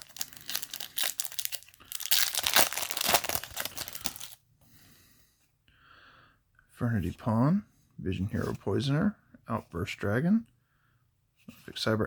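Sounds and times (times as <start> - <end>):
foil wrapper tearing and crinkling: 0.0 - 4.4.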